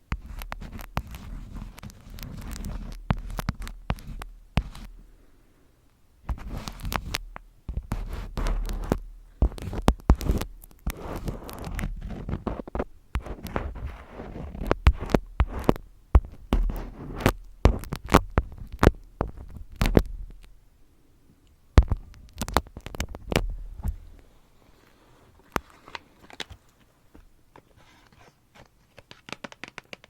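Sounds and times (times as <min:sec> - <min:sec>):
brushing rustles: 0:00.1 - 0:05.1, 0:06.3 - 0:20.5, 0:21.9 - 0:29.3
sharp taps and clicks: 0:06.3 - 0:13.9, 0:14.5 - 0:20.6, 0:21.8 - 0:24.1.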